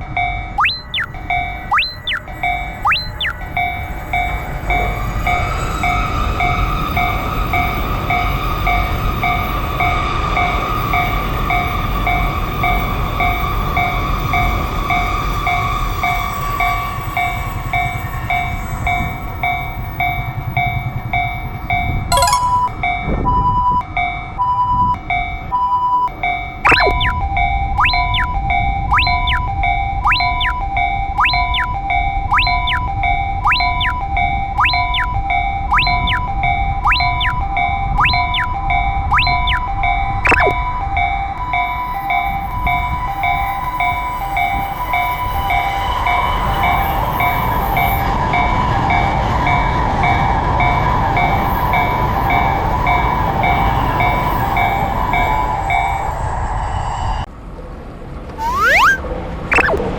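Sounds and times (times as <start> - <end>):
click: 26.7 - 27.2, 28.9 - 29.4, 31.2 - 31.7, 34.6 - 35.1, 35.7 - 36.2, 38.0 - 38.5, 39.1 - 39.6, 40.2 - 40.6
level crossing alarm bell ringing: 27.8 - 40.5.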